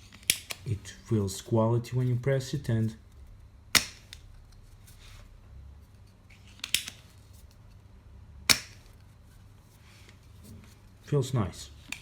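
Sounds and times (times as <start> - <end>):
desoldering pump plunger snaps: 3.7 - 4.3, 6.6 - 7.0, 8.5 - 9.0.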